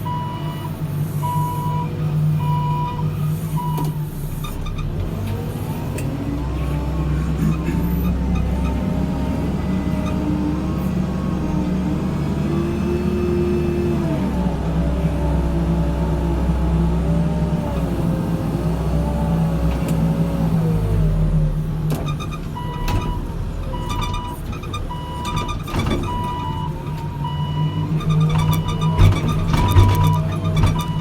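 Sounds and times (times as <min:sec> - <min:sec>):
reversing alarm beeping: 0:00.0 - 0:04.8, 0:22.1 - 0:31.0
diesel engine under load: 0:00.0 - 0:31.0.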